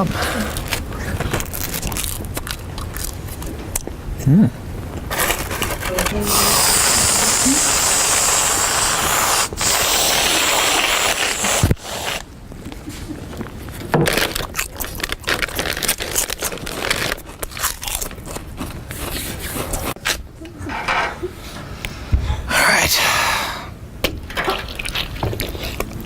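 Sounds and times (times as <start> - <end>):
crackling and crunching: 0.6 - 3.9, 13.3 - 19.2.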